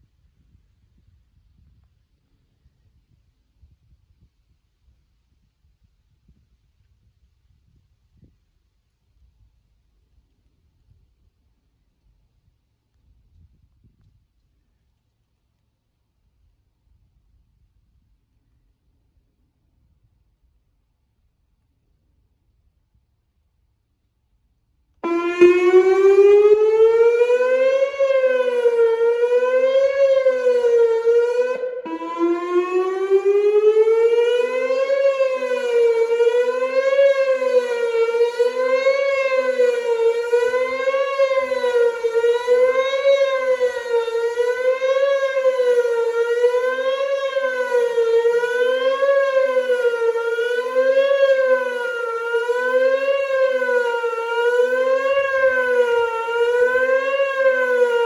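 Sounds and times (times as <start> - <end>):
wavering warning siren: 25.0 - 58.0.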